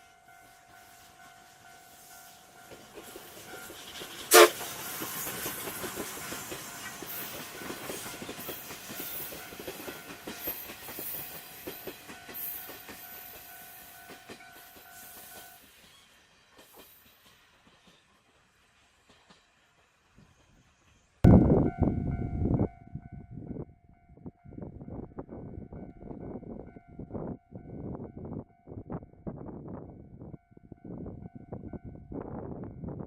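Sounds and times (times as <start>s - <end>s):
train wheels clacking on rails: 0.7s - 21.2s
steam hiss: 0.8s - 13.9s, 14.7s - 21.2s.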